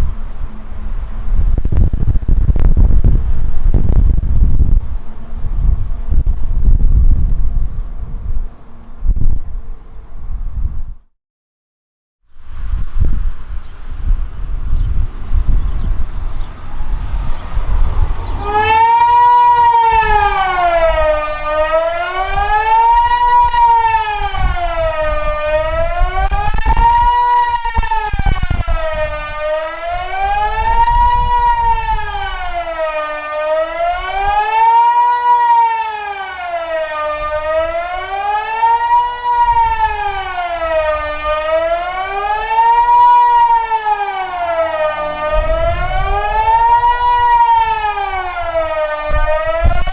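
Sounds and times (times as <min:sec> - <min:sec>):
electronic siren wailing: 0:15.4 - 0:49.9.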